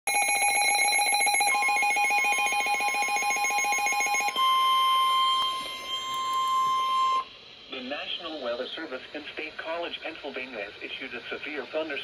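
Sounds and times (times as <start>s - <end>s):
steady high alert tone: 0.1s - 7.3s
rapidly pulsing alert tone: 0.2s - 6.9s.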